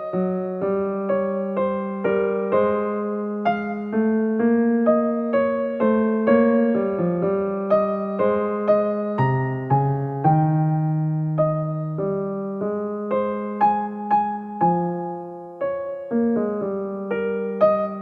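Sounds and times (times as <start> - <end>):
electric piano melody: 0.0 - 18.0.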